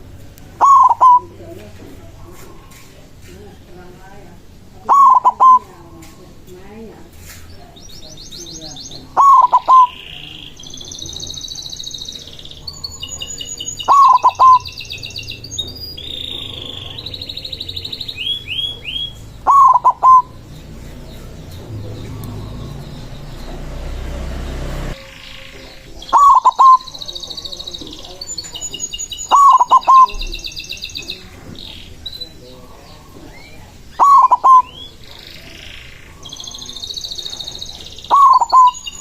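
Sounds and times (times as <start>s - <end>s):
songbirds chirping and trilling: 0.0s - 39.0s
dove cooing: 0.6s - 1.6s, 4.8s - 6.4s, 8.9s - 11.2s, 12.7s - 14.7s, 18.0s - 24.0s, 25.0s - 28.6s, 29.3s - 30.5s, 32.6s - 36.7s, 38.0s - 38.8s.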